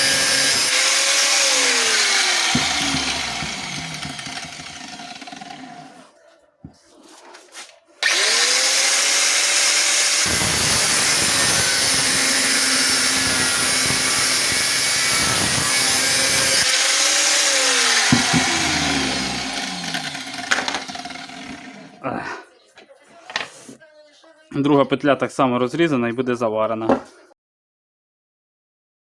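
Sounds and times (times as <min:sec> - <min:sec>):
angle grinder cutting steel: 0:00.0 - 0:06.0, 0:08.0 - 0:22.0.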